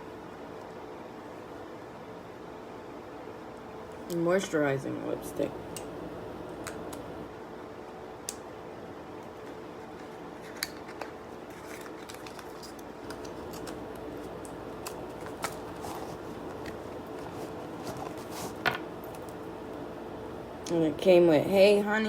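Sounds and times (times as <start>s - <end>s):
steady low hum: 0.0s - 22.0s
packaging handling noises: 9.4s - 19.4s.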